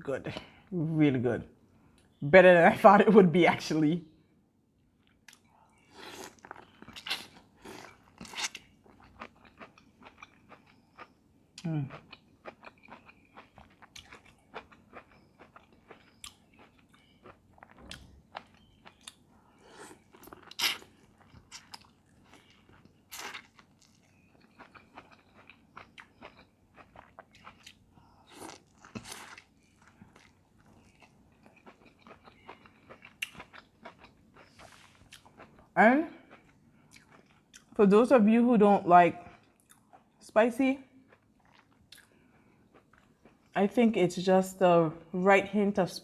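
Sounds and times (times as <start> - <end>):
person chewing crunchy food: 5.0 - 37.8, 39.3 - 40.2, 41.0 - 43.6.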